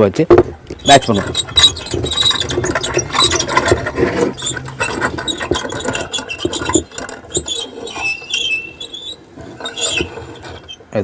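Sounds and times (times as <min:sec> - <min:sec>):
small wheel squeaking: 0:00.4 - 0:11.0.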